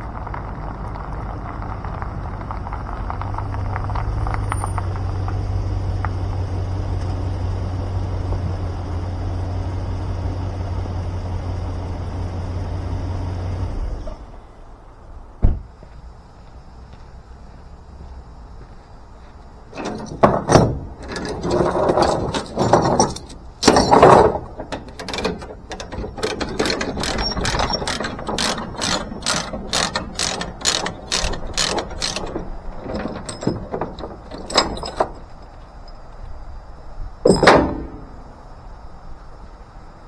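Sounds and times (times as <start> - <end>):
metal rattling and clanking: 19.7 - 36.2, 37.2 - 38.5
ratchet tie-down clicking: 21.7 - 35.1.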